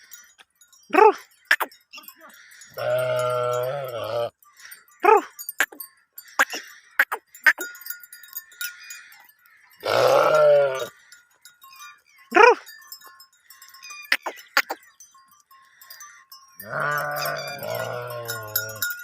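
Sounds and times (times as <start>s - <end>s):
faint bell ringing: 0.0s - 19.0s
sheep bleating: 2.8s - 4.3s, 9.8s - 10.9s, 16.6s - 18.9s.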